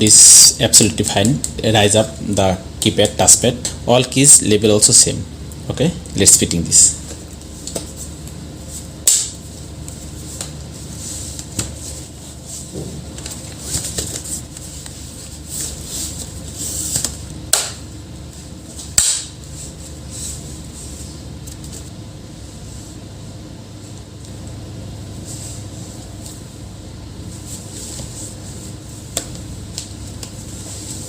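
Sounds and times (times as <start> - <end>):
scraping and handling noises: 9.9 - 17.2.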